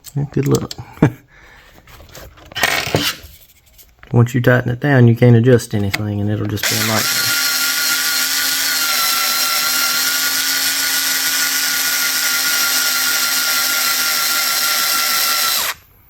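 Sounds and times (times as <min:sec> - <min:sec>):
electric power driver whining: 0:05.9 - 0:16.0.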